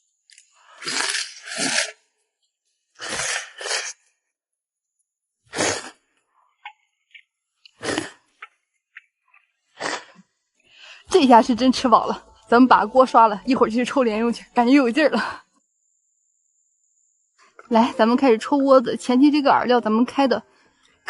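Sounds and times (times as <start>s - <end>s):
person slurping noodles: 0.7s - 2.1s, 3.0s - 4.2s, 5.5s - 6.1s, 7.7s - 8.3s, 9.8s - 10.3s.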